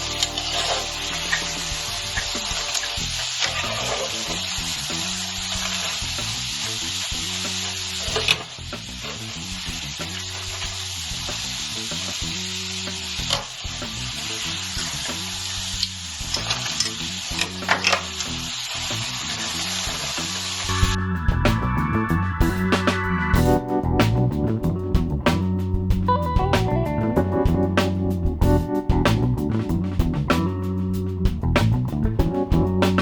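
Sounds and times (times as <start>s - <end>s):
quiet background music: 0.0s - 3.5s.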